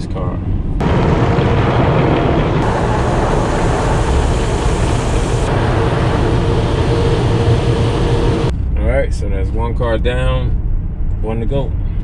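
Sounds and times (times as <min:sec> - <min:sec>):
car wash rushing noise: 0:00.8 - 0:08.5.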